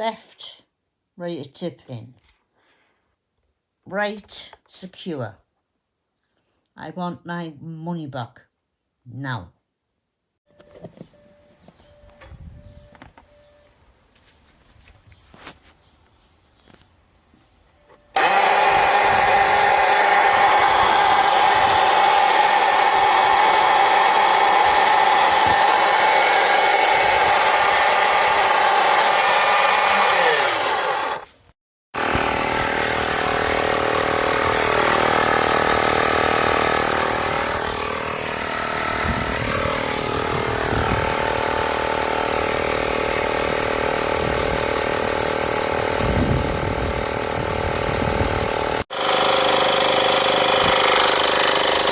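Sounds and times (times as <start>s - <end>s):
steady machine sound: 18.1s - 31.2s, 32.0s - 51.9s
air compressor buzzing: 18.1s - 31.3s, 32.0s - 51.9s.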